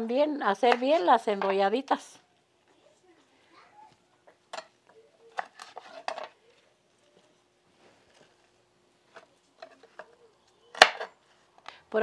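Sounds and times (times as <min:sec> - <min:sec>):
dishes and utensils clinking: 0:04.5 - 0:06.5.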